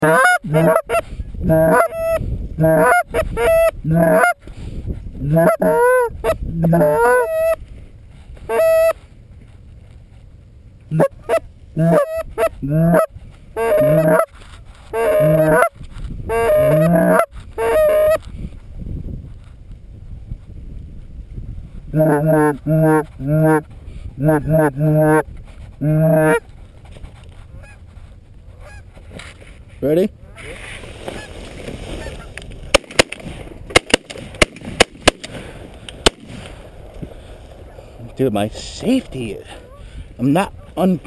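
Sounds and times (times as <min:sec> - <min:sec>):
geese honking and clucking: 0:00.0 - 0:04.4, 0:05.2 - 0:07.6, 0:08.4 - 0:09.0, 0:10.9 - 0:18.3, 0:21.9 - 0:26.5, 0:27.4 - 0:29.3, 0:29.9 - 0:32.8.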